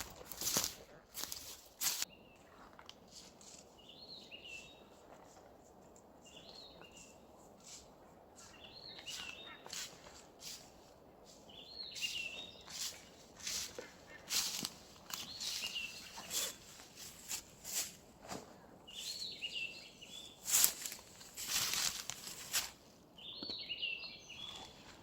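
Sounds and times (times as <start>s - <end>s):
songbird singing: 0.0s - 17.8s, 18.4s - 25.0s
footsteps on forest litter: 0.0s - 22.9s.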